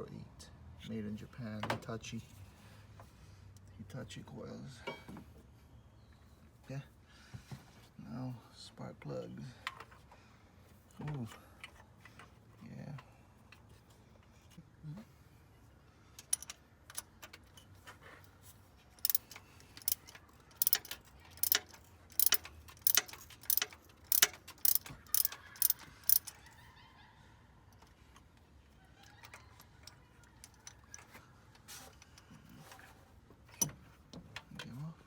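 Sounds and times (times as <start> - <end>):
faint handling sounds: 1.3 - 26.7, 27.6 - 35.0
ratchet wrench clicking: 16.2 - 17.6, 19.0 - 26.4, 29.8 - 31.2.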